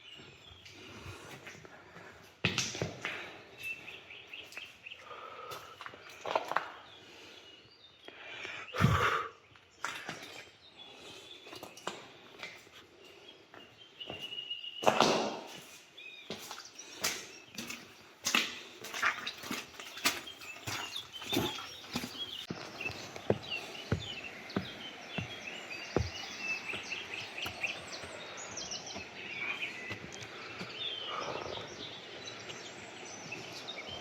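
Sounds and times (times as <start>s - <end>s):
birds chirping: 0.0s - 34.0s
footsteps on a path: 10.0s - 31.4s.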